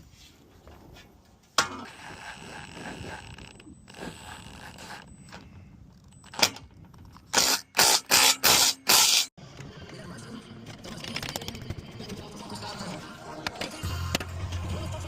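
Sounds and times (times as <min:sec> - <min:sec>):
scraping metal clamp hardware: 0:06.2 - 0:09.3.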